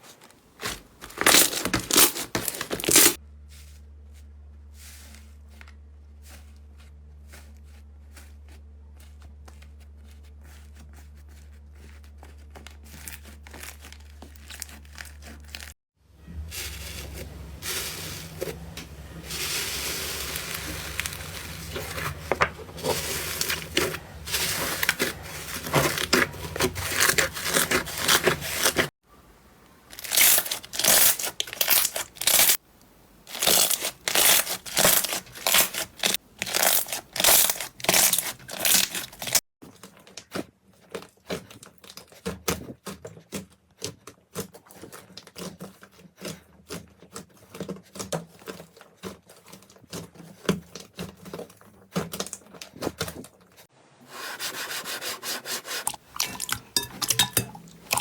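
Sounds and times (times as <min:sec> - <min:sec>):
slime crackling and popping: 0:29.9 - 0:32.6, 0:33.3 - 0:39.4.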